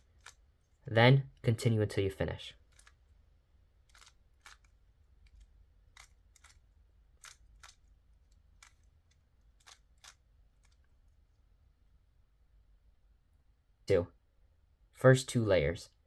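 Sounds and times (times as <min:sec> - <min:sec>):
puzzle cube faces clicking: 0:00.0 - 0:00.5, 0:02.6 - 0:03.2, 0:03.8 - 0:11.1.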